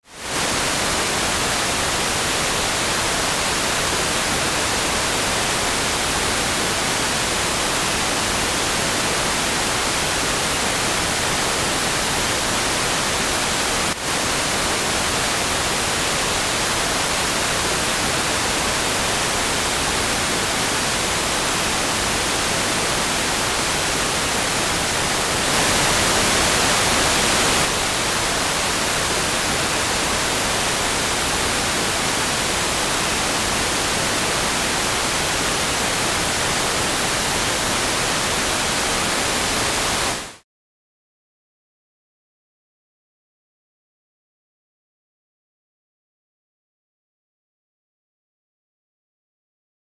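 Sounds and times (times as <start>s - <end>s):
pink noise hiss: 0.1s - 40.4s.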